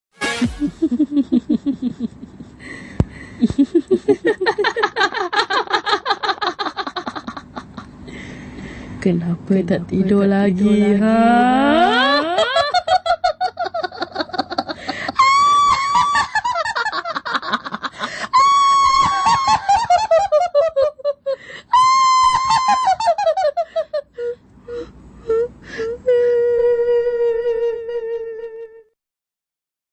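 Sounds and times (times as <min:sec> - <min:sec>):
high-pitched ghostly cackle: 0:00.4 - 0:02.8, 0:03.4 - 0:08.0, 0:10.8 - 0:24.4.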